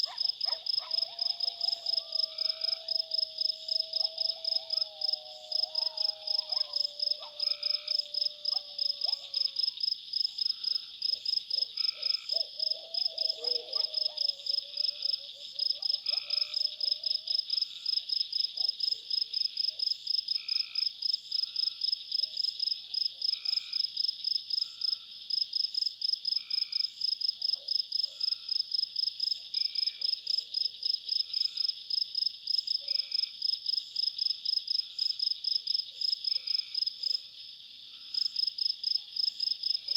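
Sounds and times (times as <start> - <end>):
insects chirping: 0.0 - 39.9.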